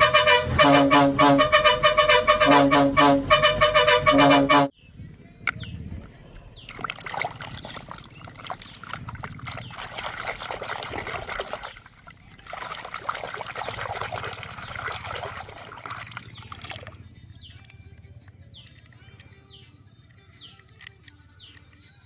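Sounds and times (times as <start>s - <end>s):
water trickling and splashing: 6.5s - 17.8s.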